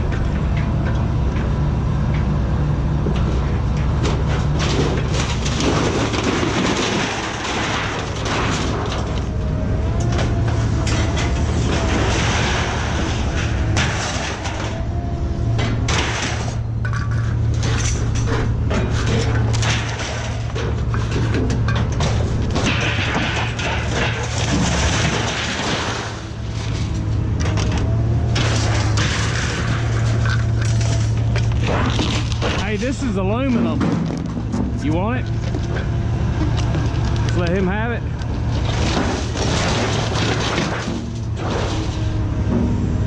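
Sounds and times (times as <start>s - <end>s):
knocks and bangs: 15.5s - 26.4s, 27.4s - 37.6s.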